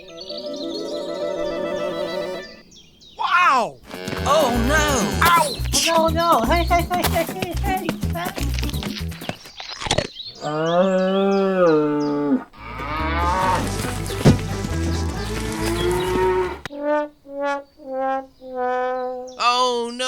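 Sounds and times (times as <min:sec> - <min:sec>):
cow mooing: 0:03.8 - 0:05.6, 0:12.6 - 0:14.0, 0:15.2 - 0:16.7
short horn-like tones: 0:03.8 - 0:08.3, 0:15.4 - 0:19.3
music with a beat: 0:04.0 - 0:09.3.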